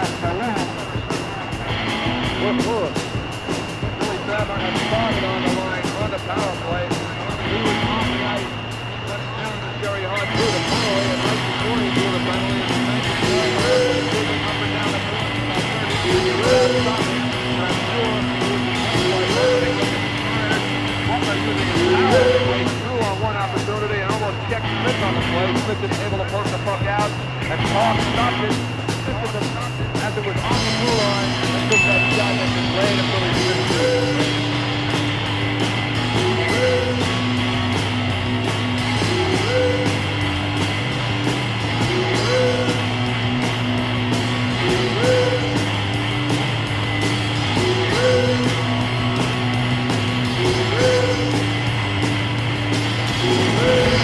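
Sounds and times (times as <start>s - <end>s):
rock music with steady beat: 0.0s - 54.0s
repeating melodic phrase: 31.8s - 32.8s.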